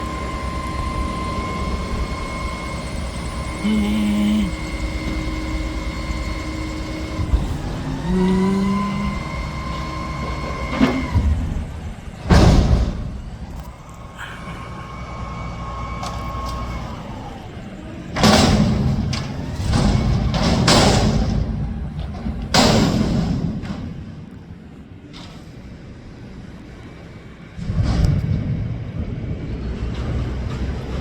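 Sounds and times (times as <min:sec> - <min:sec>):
garbage truck engine: 0:00.0 - 0:31.0
high whine: 0:01.3 - 0:10.2.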